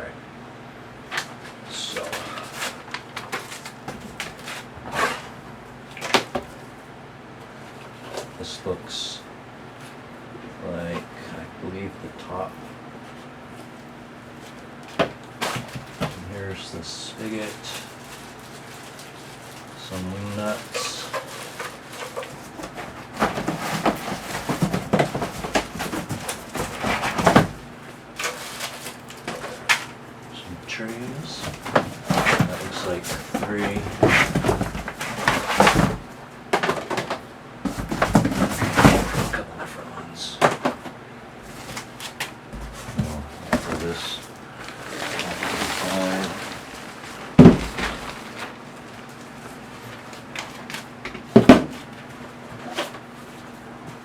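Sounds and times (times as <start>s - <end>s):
packaging rustling: 17.4s - 30.0s, 31.0s - 36.1s, 41.5s - 50.9s
plastic parts clattering: 20.3s - 27.6s, 28.2s - 30.0s, 31.0s - 39.5s, 41.5s - 49.2s
plastic trays knocking: 42.6s - 44.2s, 45.0s - 48.5s.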